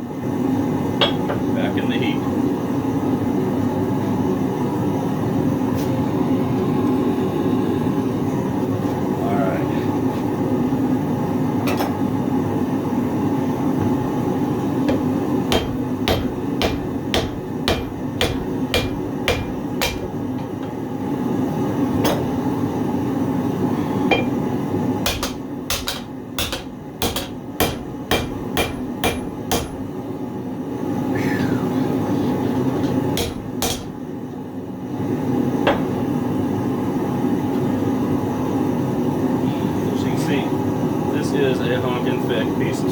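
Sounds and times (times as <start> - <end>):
hammer striking steel on anvil: 14.9 - 20.2, 24.1 - 24.4, 25.1 - 29.8, 33.2 - 34.0.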